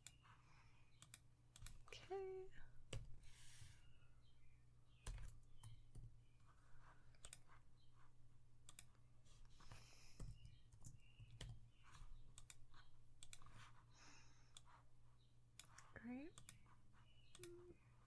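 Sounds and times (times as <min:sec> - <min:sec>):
mouse and keyboard clicks: 0:07.1 - 0:07.9, 0:08.7 - 0:09.0, 0:10.2 - 0:13.8, 0:15.6 - 0:17.7.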